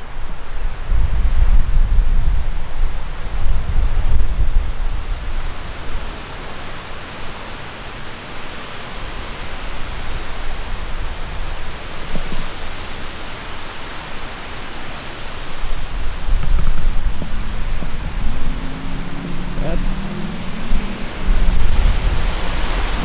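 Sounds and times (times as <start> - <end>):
wind rushing: 0.0 - 6.1, 15.3 - 23.0
wind gusts buffeting microphone: 0.0 - 23.0.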